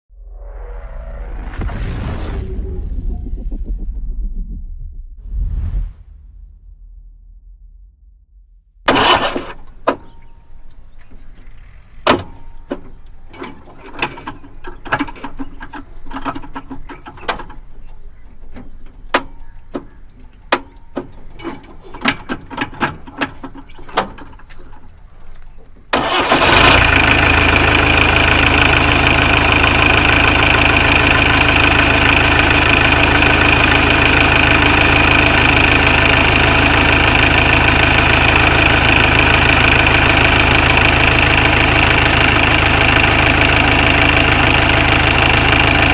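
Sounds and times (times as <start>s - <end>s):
bus engine running loudly: 26.3s - 45.9s.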